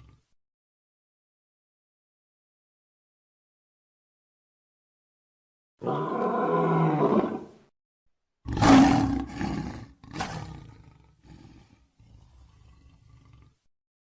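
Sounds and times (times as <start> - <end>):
lion roaring: 5.8 - 7.6, 8.5 - 13.7.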